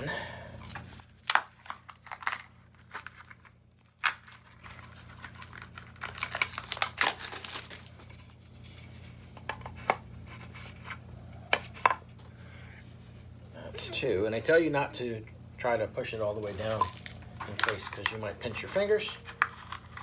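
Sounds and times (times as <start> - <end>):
rustling handling noise: 0.6 - 11.0, 16.2 - 20.0.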